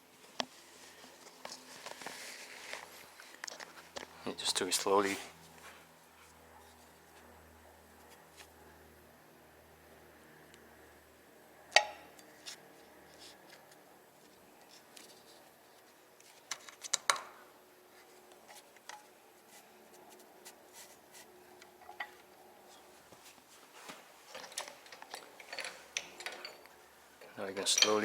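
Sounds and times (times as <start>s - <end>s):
metal clicks and clanks: 24.3s - 26.8s, 27.6s - 28.0s.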